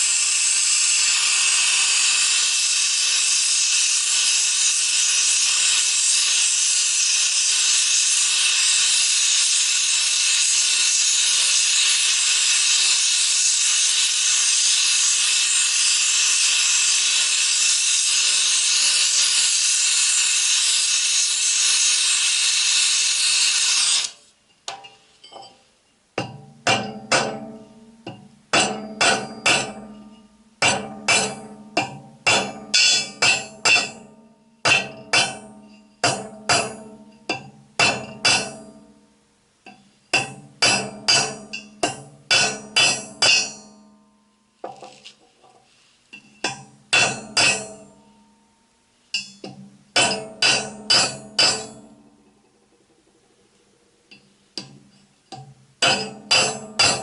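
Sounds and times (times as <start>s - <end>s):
hammer ringing on steel: 26.2s - 39.0s, 40.1s - 44.3s, 46.4s - 52.1s, 55.3s - 57.0s.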